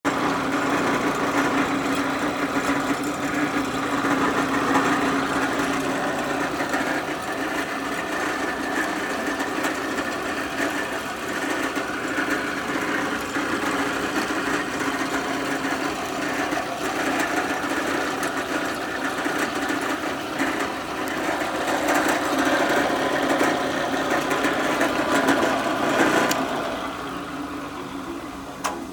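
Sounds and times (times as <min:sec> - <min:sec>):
drill press motor humming: 0:00.0 - 0:28.9
whirring rattle: 0:00.0 - 0:28.9.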